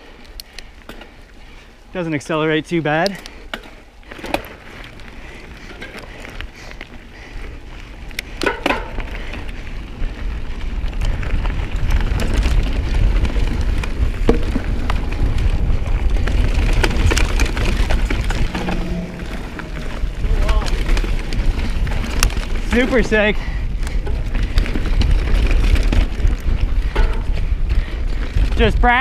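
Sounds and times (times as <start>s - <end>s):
bike clicks and rattles: 0.0s - 29.0s
tyres crunching over gravel: 8.8s - 29.0s
low rumble: 12.0s - 22.8s.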